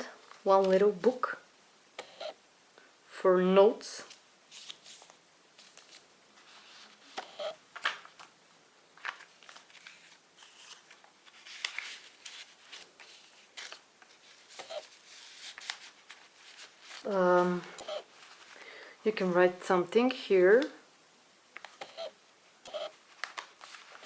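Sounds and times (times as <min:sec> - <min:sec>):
paper rustling: 0:04.0 - 0:08.3, 0:09.0 - 0:18.7, 0:23.0 - 0:24.0.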